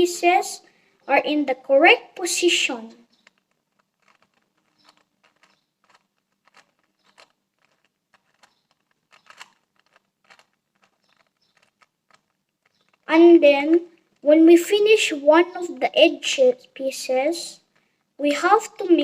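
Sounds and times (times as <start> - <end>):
puzzle cube clicking: 2.2 - 14.3.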